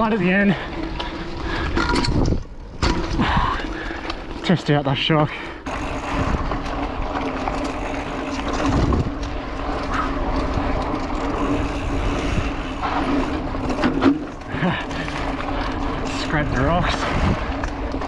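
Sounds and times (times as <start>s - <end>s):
bike tyres rumbling on dirt: 0.0s - 18.0s
wind rushing over microphone: 1.6s - 3.7s, 5.7s - 6.9s, 8.5s - 9.2s, 16.0s - 18.0s.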